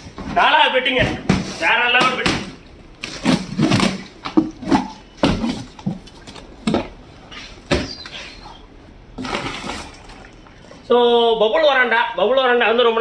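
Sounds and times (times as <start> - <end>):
box knocks and bumps: 1.0 - 7.0.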